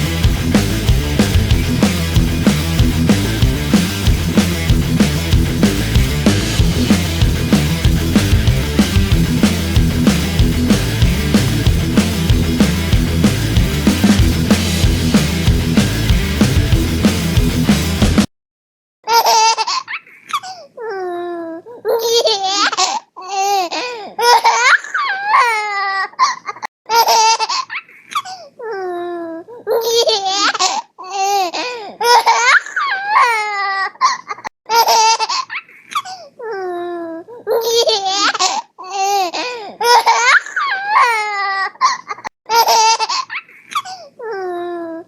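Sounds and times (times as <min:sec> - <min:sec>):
baby laughing: 0:19.0 - 0:45.0.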